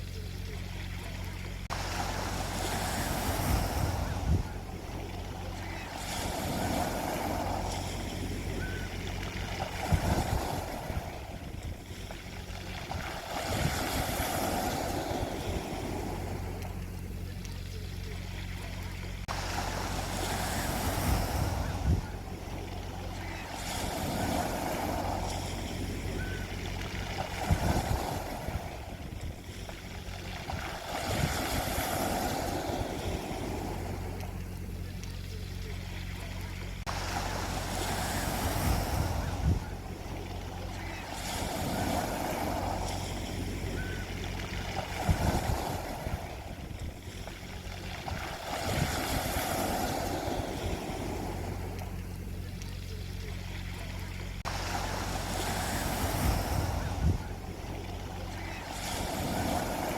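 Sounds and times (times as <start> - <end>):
low rumble: 0.0 - 59.9
sea waves breaking on beach: 0.0 - 59.9.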